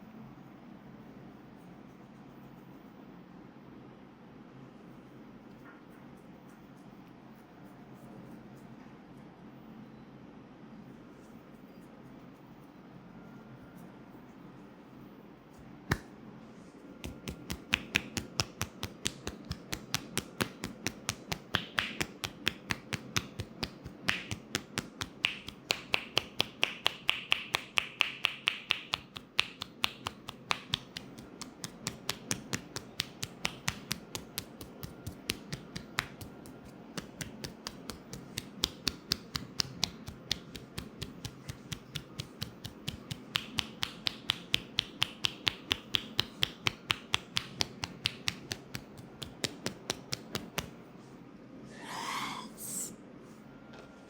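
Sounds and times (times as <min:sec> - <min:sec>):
hand clicks and taps: 0:15.9 - 0:16.1, 0:17.0 - 0:50.8.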